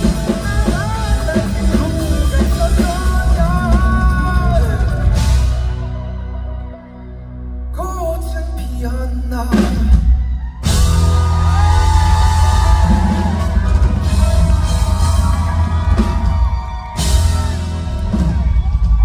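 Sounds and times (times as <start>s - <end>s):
man singing long notes: 0.0s - 6.4s
rock band playing: 0.0s - 19.0s.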